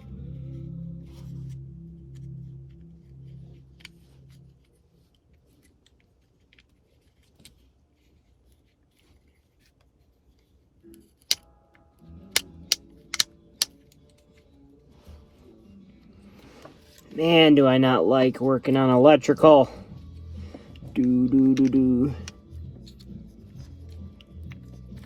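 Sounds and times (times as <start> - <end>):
soft background music: 0.0 - 5.7, 10.4 - 25.0
plastic switch parts clicking: 12.3 - 13.8.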